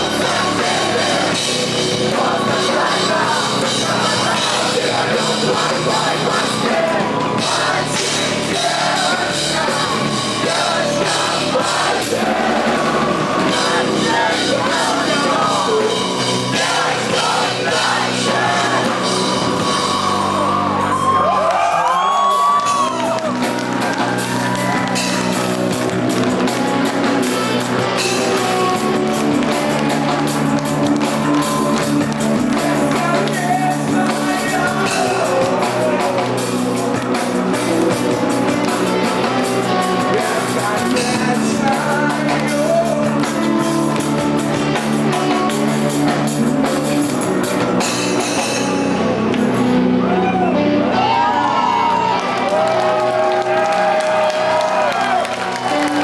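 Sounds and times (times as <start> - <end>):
person singing: 0.0 - 25.8, 26.4 - 48.6
audience shouting: 0.0 - 36.5, 50.0 - 56.0
distorted guitars: 0.0 - 56.0
drums: 0.0 - 56.0
live rock band playing: 0.0 - 56.0.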